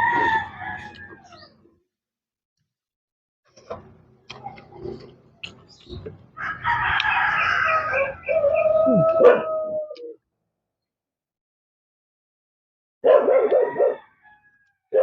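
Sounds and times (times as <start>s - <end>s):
rooster crowing: 0.0s - 1.4s, 6.4s - 10.1s, 13.3s - 15.0s.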